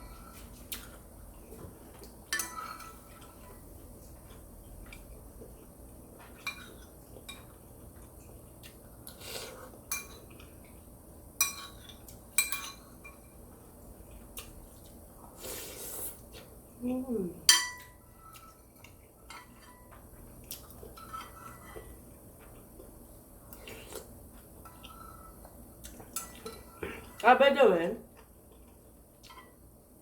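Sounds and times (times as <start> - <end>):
utensils clinking against a dish: 2.3 - 3.6, 9.9 - 10.4, 11.4 - 13.4, 17.4 - 20.0.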